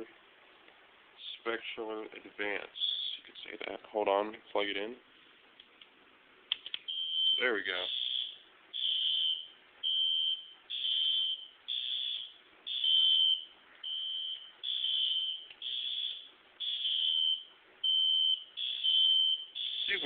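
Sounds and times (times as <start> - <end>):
fire alarm horn blasts: 6.9 - 20.0.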